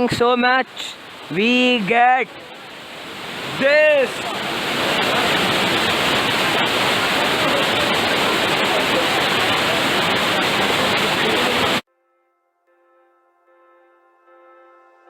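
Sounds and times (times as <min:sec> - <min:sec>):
waterfall rushing: 0:00.0 - 0:11.8.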